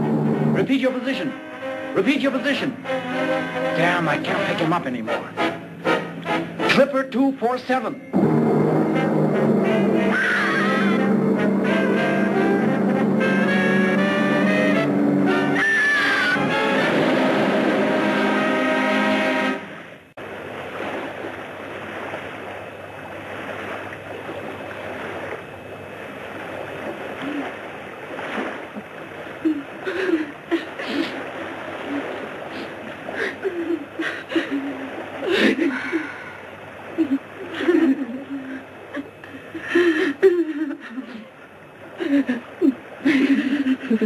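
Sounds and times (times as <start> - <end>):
sea water washing: 0.0 - 44.0
sharp splashes: 13.2 - 40.1
people crying and sobbing: 37.0 - 41.3.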